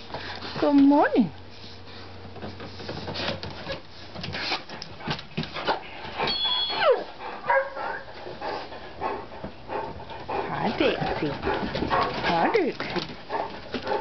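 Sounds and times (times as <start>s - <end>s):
dog whine: 6.2s - 8.0s.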